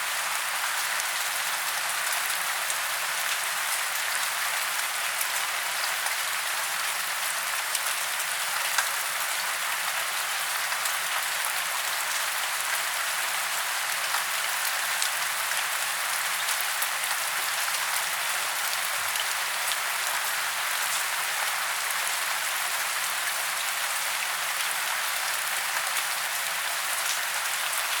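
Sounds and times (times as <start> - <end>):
rain on leaves: 0.0 - 28.0.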